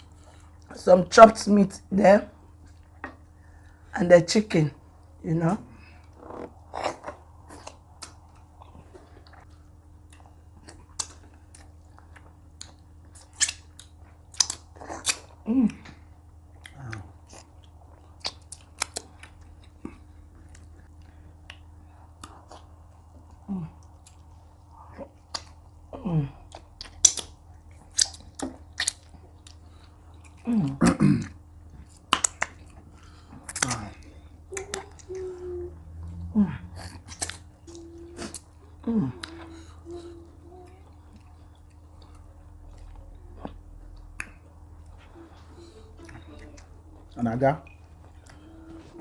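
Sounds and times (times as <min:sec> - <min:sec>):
steady low hum: 0:00.0 - 0:49.0
wet chewing and lip smacks: 0:06.0 - 0:15.8, 0:16.5 - 0:25.8, 0:26.4 - 0:30.5, 0:31.6 - 0:35.2, 0:36.8 - 0:38.6, 0:40.6 - 0:45.1.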